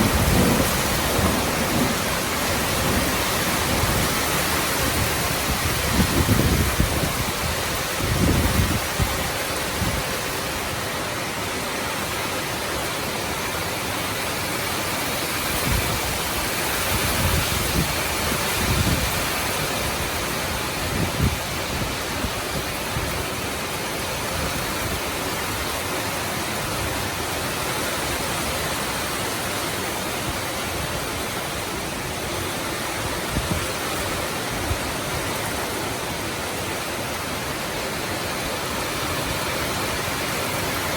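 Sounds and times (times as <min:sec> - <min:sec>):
low thunder rumbles: 0:00.0 - 0:07.4
heavy rain pouring: 0:00.0 - 0:40.9.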